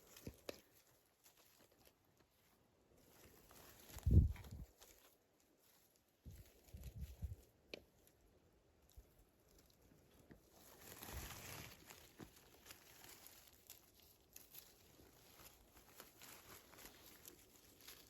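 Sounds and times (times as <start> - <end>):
berries picked ticking: 0.0 - 2.3
shrubs rustling: 0.0 - 18.0.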